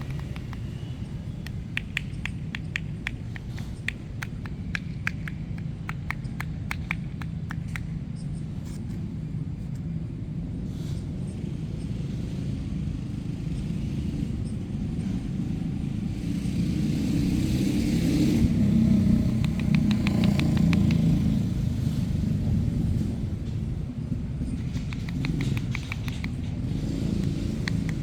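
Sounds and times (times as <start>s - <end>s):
motorbike engine: 0.0s - 7.9s, 12.6s - 28.0s
sharp clicks: 0.0s - 8.0s, 19.1s - 21.6s, 24.4s - 28.0s
street traffic rumble: 0.0s - 28.0s.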